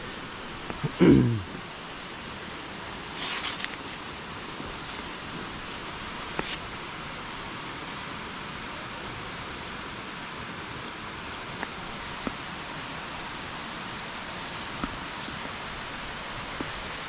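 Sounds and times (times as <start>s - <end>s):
waterfall rushing: 0.0s - 17.0s.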